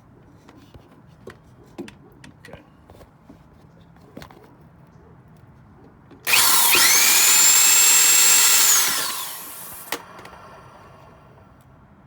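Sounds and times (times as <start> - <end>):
electric drill whining: 6.3 - 11.2.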